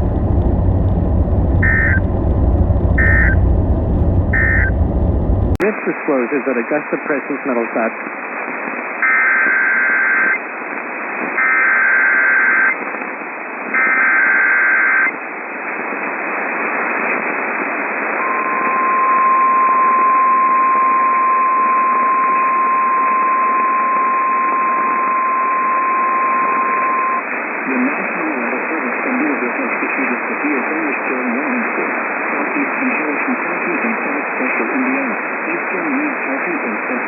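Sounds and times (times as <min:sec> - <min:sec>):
radio static: 0:00.0 - 0:37.0
steady alert tone: 0:01.4 - 0:05.5
warbling digital data tones: 0:01.5 - 0:04.9.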